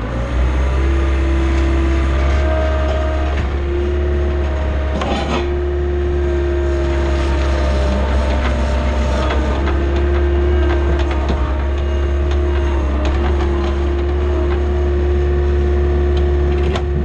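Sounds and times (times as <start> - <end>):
diesel engine running: 0.0 - 17.0
metallic clanks and rattles: 4.3 - 5.8.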